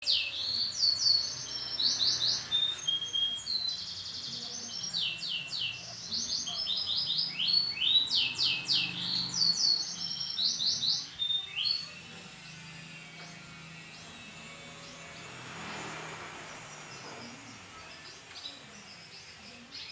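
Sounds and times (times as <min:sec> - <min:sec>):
canary singing trills: 0:00.0 - 0:19.9.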